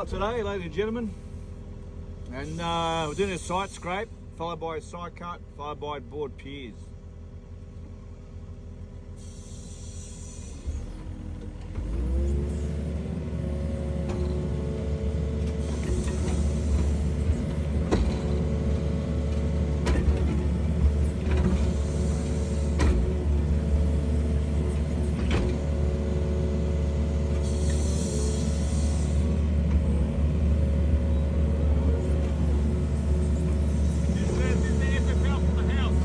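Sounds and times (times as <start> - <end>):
excavator diesel engine: 0.0 - 36.0
hiss: 9.2 - 10.7.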